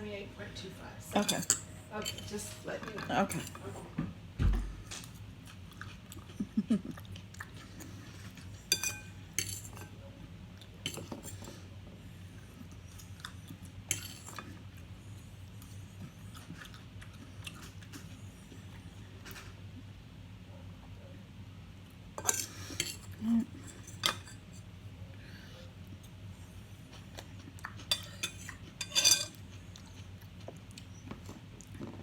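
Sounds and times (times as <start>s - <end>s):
cutlery clinking against a plate: 1.1s - 3.8s, 8.5s - 10.0s, 10.8s - 11.6s, 13.9s - 14.6s, 22.2s - 24.4s, 27.6s - 29.5s
quiet chewing: 4.9s - 8.6s, 12.3s - 19.8s, 25.7s - 32.0s.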